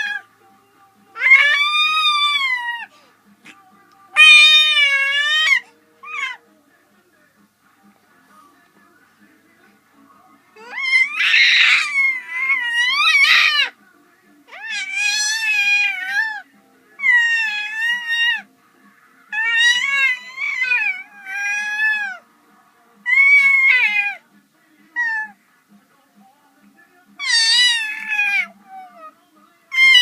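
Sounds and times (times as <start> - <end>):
cat yowling: 0.0 - 0.3, 1.2 - 2.9, 4.2 - 6.4, 10.6 - 13.8, 14.5 - 18.5, 19.3 - 22.2, 23.0 - 24.2, 25.0 - 25.4, 27.2 - 30.0.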